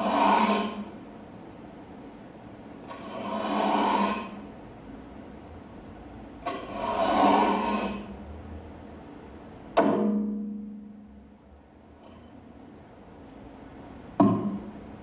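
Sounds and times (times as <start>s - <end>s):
rasping scraping noise: 0.0s - 1.0s, 2.9s - 4.4s, 6.5s - 8.1s
sharp knock: 14.2s - 14.7s.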